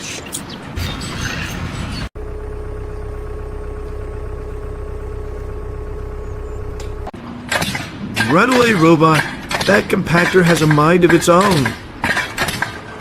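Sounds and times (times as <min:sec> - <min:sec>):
engine running steadily: 0:02.2 - 0:07.2.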